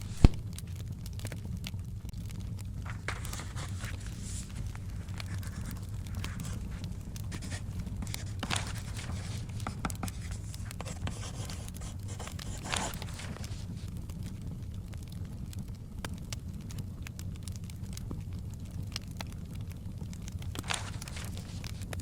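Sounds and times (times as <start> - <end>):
paper rustling and scratching: 0.0 - 0.4, 2.8 - 14.0, 20.5 - 22.0
page being turned: 0.0 - 0.6, 2.8 - 13.9, 20.6 - 21.9
steady low rumble: 0.0 - 10.7
fire crackling: 0.0 - 22.0.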